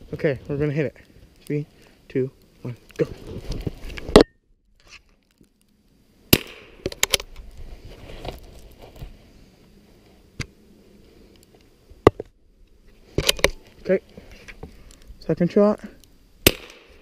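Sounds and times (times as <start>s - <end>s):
rifle shot crack: 6.3s - 7.1s, 16.4s - 17.0s.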